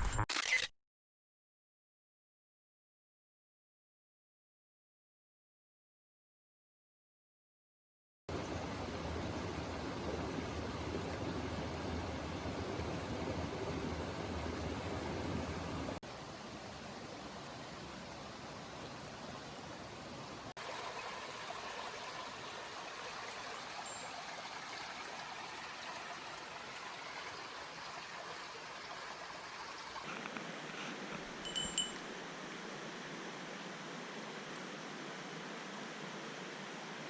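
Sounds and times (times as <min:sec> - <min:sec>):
stream water rushing: 0:08.3 - 0:37.0.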